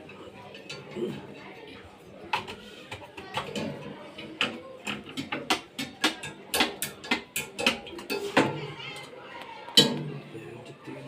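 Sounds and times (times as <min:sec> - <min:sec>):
hand tools clicking on metal: 0:04.9 - 0:08.3.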